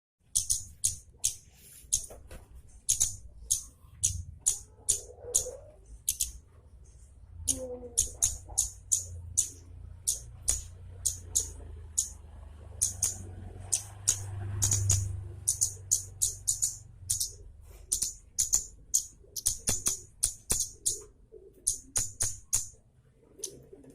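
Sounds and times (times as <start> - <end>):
songbird high-pitched chirps: 7.4 - 12.2, 12.8 - 22.7.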